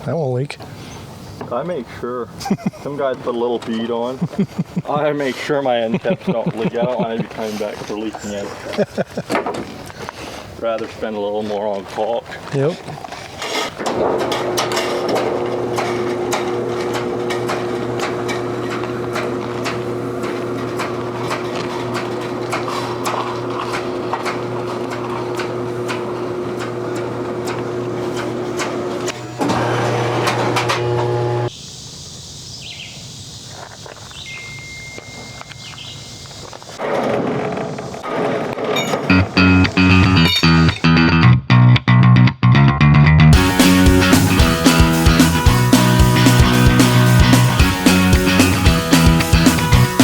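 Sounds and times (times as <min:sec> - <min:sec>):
mechanical hum: 0:13.8 - 0:31.5
brief high tone: 0:38.8 - 0:41.2.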